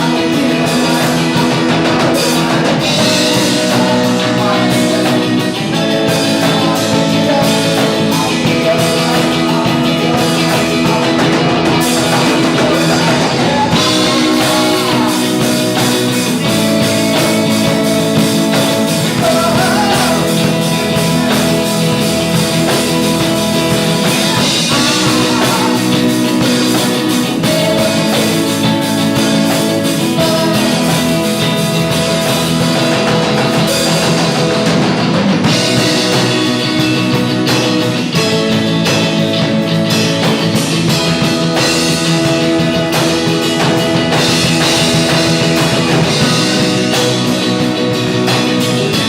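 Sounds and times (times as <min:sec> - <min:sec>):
person singing: 0:00.0 - 0:36.8
rock music with guitar and drums: 0:00.0 - 0:49.0.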